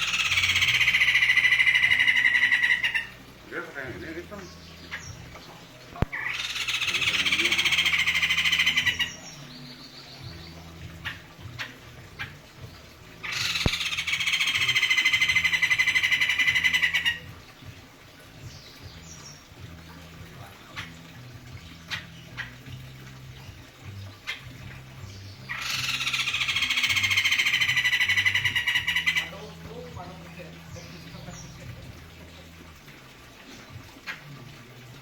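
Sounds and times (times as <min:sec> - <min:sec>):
bird cackling call: 0:00.0 - 0:03.1, 0:13.2 - 0:17.2, 0:25.5 - 0:29.3.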